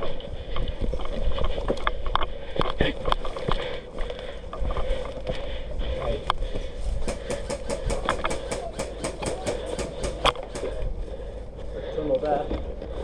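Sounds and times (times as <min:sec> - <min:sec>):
low rumble of wind: 0:00.0 - 0:08.4, 0:10.2 - 0:13.0
airsoft guns firing: 0:07.0 - 0:10.8.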